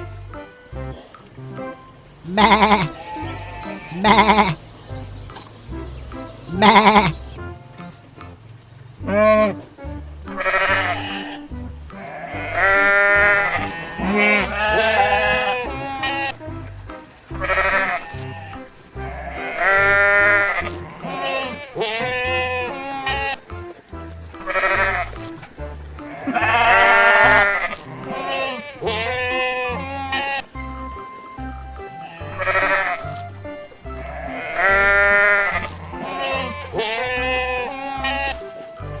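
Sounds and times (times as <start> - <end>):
background music with low beat: 0.0 - 39.0
sheep bleating: 2.3 - 4.6, 6.5 - 7.2, 10.3 - 16.4, 17.4 - 23.4, 26.0 - 30.5, 32.0 - 33.0, 34.1 - 38.4.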